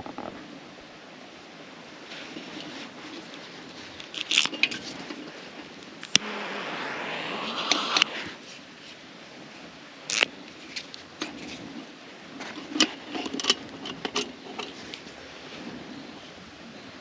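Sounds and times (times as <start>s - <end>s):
steady low hiss: 0.0s - 12.4s.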